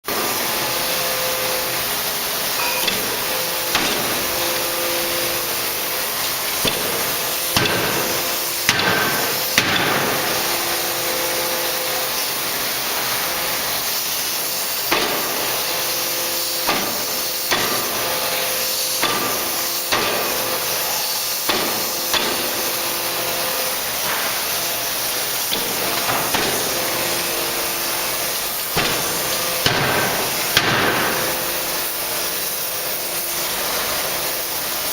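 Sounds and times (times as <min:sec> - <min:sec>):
machinery hiss and whine: 0:00.1 - 0:34.9
forging hammer impacts: 0:02.6 - 0:04.4.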